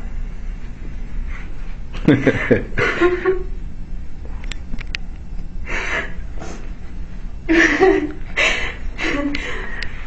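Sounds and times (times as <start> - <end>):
woman sobbing and gasping: 7.5 - 9.8.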